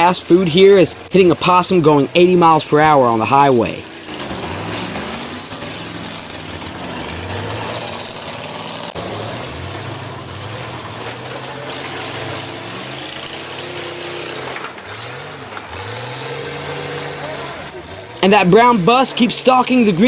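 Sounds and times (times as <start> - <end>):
bus engines revving: 0.0 - 20.0.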